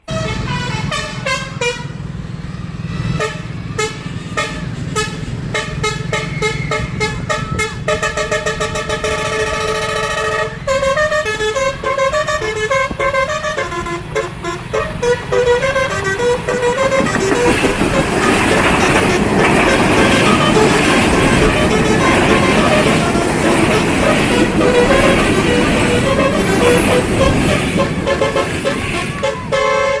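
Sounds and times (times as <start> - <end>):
horn toots and honks: 0.0 - 2.2, 2.8 - 30.0
loud rushing noise: 0.0 - 29.7.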